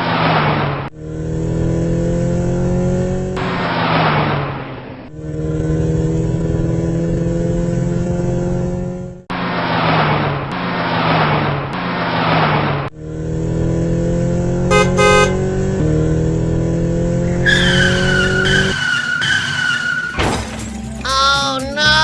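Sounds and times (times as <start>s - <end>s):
cartoon engine hum and revving: 0.0s - 9.3s, 10.0s - 22.0s
double horn beep: 14.7s - 15.8s.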